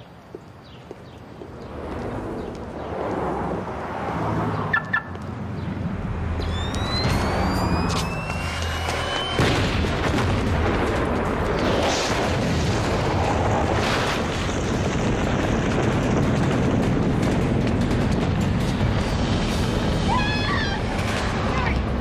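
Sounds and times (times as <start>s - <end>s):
car bomb explosion boom: 9.4s - 18.0s.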